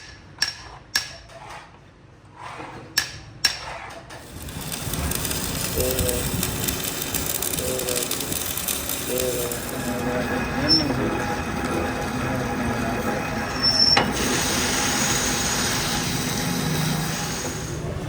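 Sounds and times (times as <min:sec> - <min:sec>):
steady mechanical noise: 0:04.1 - 0:18.0
ringing metallic tones: 0:07.0 - 0:14.8.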